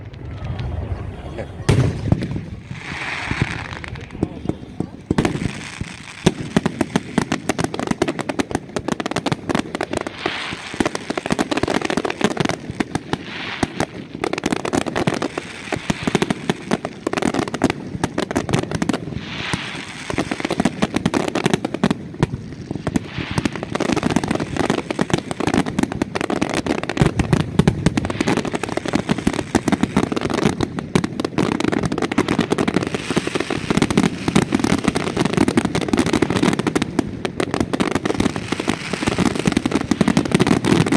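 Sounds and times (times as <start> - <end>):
firecracker barrage: 0.0 - 40.9.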